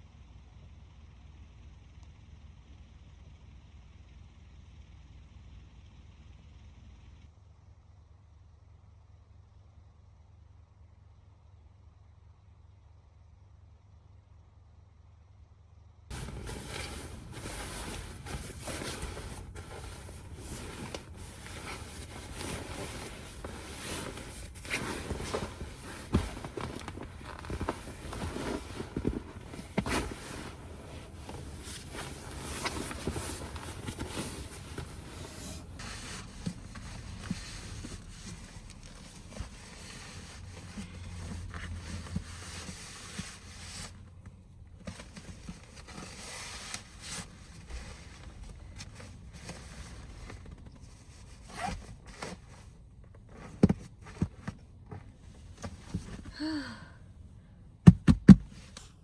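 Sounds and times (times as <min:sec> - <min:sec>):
rustling and scraping handling noises: 0:16.1 - 0:56.8.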